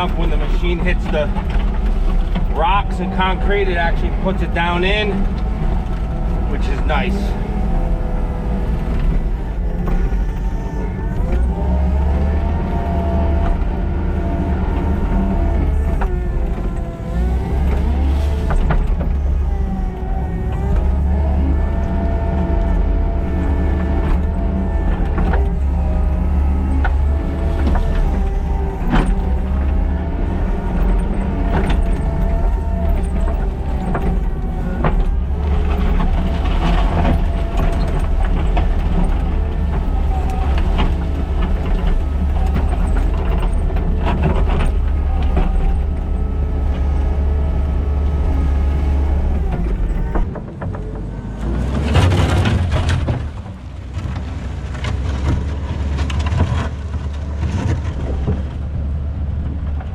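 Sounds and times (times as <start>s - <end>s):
diesel engine running under load: 0.0s - 59.9s.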